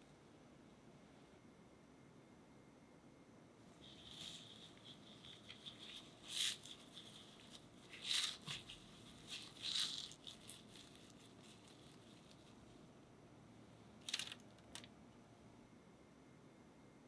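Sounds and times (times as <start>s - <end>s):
crisp pastry crackling: 3.8s - 12.8s, 14.0s - 14.9s.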